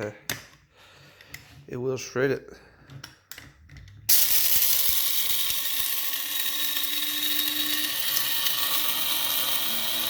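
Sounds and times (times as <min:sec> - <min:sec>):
coffee grinder grinding beans: 0:04.1 - 0:10.0.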